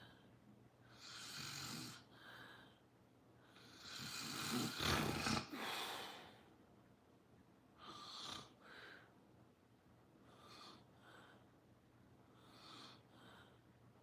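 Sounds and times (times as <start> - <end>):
soft airy breaths: 0.0 - 6.8, 7.7 - 14.0
person snoring: 3.8 - 5.9.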